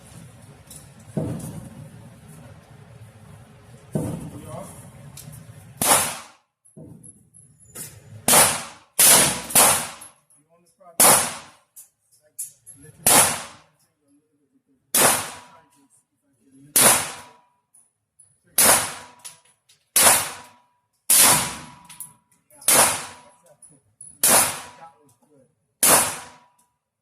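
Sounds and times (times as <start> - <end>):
rifle firing single shots: 5.8 - 6.3, 8.3 - 10.0, 11.0 - 11.5, 13.0 - 13.6, 14.9 - 15.5, 16.8 - 17.3, 20.0 - 20.4, 22.7 - 23.3, 24.2 - 24.8, 25.8 - 26.4.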